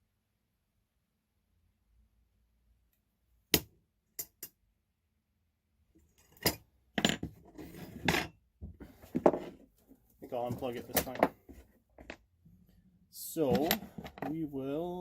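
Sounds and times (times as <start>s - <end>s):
metal parts clattering and knocking: 13.5s - 14.4s.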